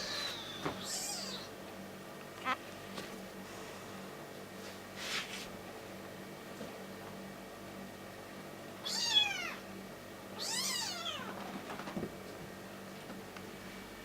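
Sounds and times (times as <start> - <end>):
kitten meowing: 0.0 - 1.5, 8.8 - 9.6, 10.4 - 11.3.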